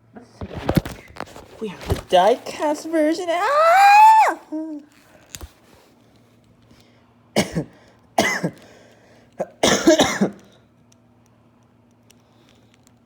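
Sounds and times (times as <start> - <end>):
person coughing: 7.4 - 8.6, 9.4 - 10.5.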